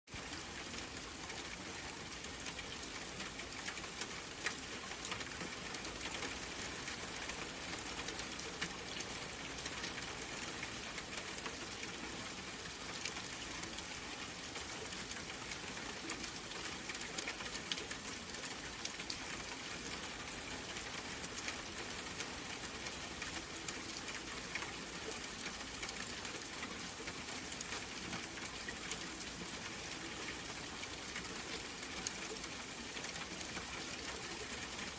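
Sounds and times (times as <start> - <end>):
steady rain falling: 0.1 - 34.9.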